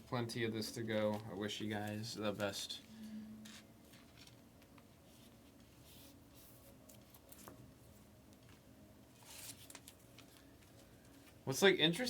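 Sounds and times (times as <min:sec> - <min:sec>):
trading cards rustling and clicking: 0:03.4 - 0:05.7.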